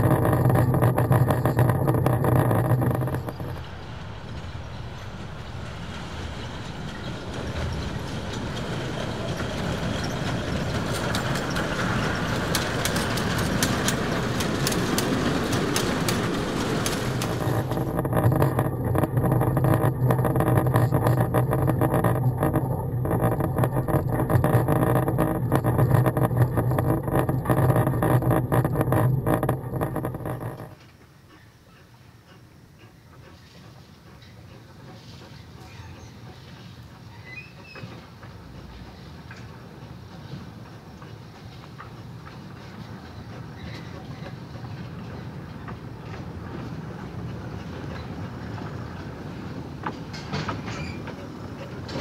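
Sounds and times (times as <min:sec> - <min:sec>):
steady low hum: 0:00.0 - 0:30.8
train wheels clattering on rail: 0:03.6 - 0:17.8, 0:30.8 - 0:52.0.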